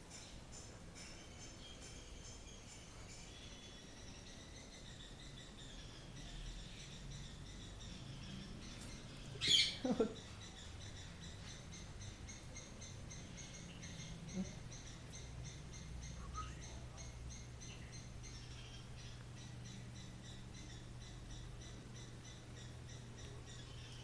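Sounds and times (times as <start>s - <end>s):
insects chirring: 0.1s - 24.0s
parrot squawking: 9.4s - 9.8s.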